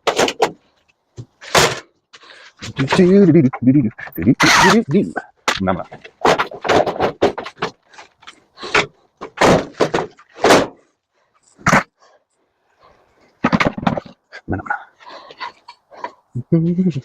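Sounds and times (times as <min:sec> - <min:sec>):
metal casing clunks and rattles: 0:04.9 - 0:11.9, 0:13.4 - 0:14.3.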